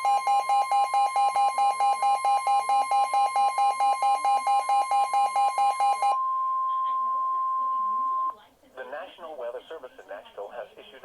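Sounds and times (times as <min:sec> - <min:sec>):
rapid piercing beeps: 0:00.0 - 0:06.4
steady warning alarm tone: 0:00.0 - 0:08.3.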